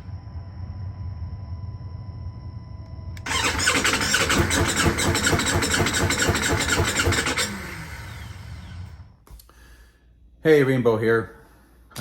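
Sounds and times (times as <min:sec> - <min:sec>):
motorcycle starter cranking: 0:03.2 - 0:08.5.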